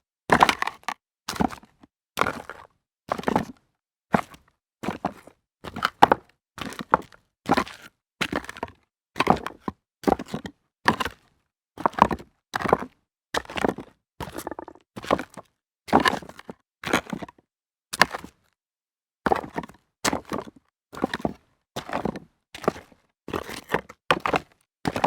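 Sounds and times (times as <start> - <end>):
crunchy footsteps: 14.4 - 14.8.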